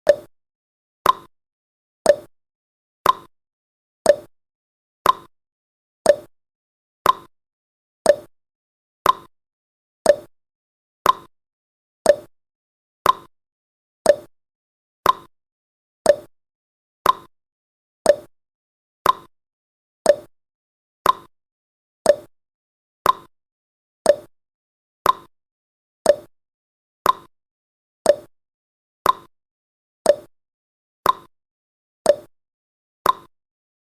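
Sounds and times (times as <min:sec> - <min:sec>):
timer ticking: 0:00.0 - 0:00.3, 0:01.0 - 0:01.3, 0:02.1 - 0:02.3, 0:03.0 - 0:03.3, 0:04.1 - 0:04.3, 0:05.0 - 0:05.3, 0:06.1 - 0:06.3, 0:07.0 - 0:07.3, 0:08.1 - 0:08.3, 0:09.0 - 0:09.3, 0:10.0 - 0:10.3, 0:11.0 - 0:11.3, 0:12.0 - 0:12.3, 0:13.0 - 0:13.3, 0:14.0 - 0:14.3, 0:15.0 - 0:15.3, 0:16.1 - 0:16.3, 0:17.0 - 0:17.3, 0:18.1 - 0:18.3, 0:19.0 - 0:19.3, 0:20.0 - 0:20.3, 0:21.0 - 0:21.3, 0:22.1 - 0:22.3, 0:23.0 - 0:23.3, 0:24.1 - 0:24.3, 0:25.0 - 0:25.3, 0:26.0 - 0:26.3, 0:27.0 - 0:27.3, 0:28.0 - 0:28.3, 0:29.0 - 0:29.3, 0:30.0 - 0:30.3, 0:31.0 - 0:31.3, 0:32.1 - 0:32.3, 0:33.0 - 0:33.3.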